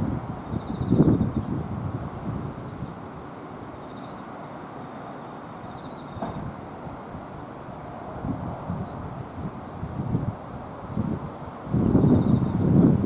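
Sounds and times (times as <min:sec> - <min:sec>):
wind buffeting microphone: 0:00.0 - 0:03.1, 0:06.2 - 0:13.0
low wind gusts rumbling: 0:00.0 - 0:03.2, 0:06.2 - 0:13.0.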